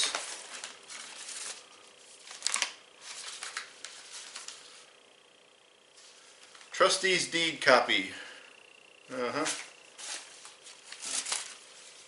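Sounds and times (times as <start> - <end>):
paper rustling: 0.0 - 4.8, 9.4 - 12.0.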